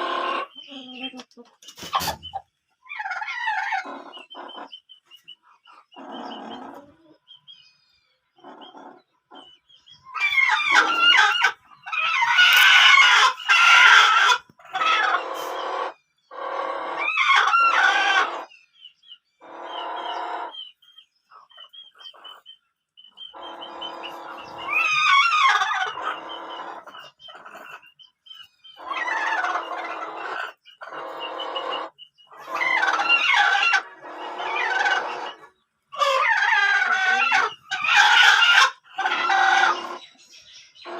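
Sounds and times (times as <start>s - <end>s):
hens clucking: 0.0s - 7.4s, 8.4s - 18.5s, 19.4s - 40.9s
chickens calling: 0.0s - 40.9s
chicks peeping: 0.0s - 40.9s
roosters crowing: 10.1s - 18.5s, 23.3s - 26.9s, 28.8s - 40.0s.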